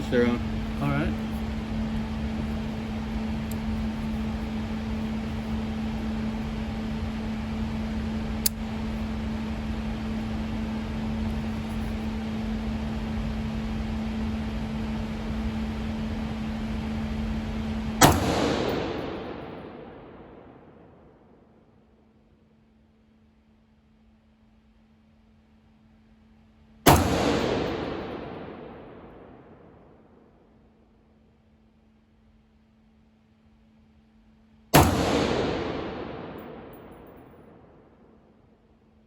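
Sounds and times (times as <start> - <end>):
ventilation hum: 0.0 - 39.0
small click: 8.4 - 8.6
gunshot ringing out: 18.0 - 20.4, 26.9 - 29.6, 34.8 - 37.8.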